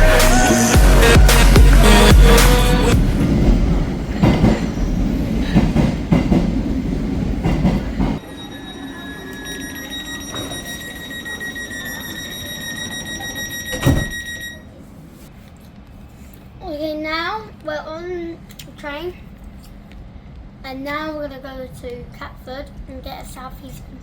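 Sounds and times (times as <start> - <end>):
train rumbling on rails: 0.0 - 15.0
train wheels clattering: 2.9 - 8.2.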